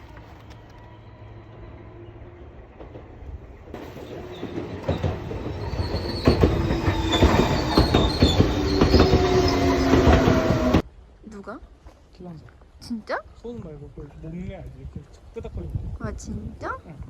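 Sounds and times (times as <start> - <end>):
train running on rails: 0.0 - 10.9
wheels clicking over rail joints: 2.5 - 10.8
train wheel squeal: 3.8 - 10.8.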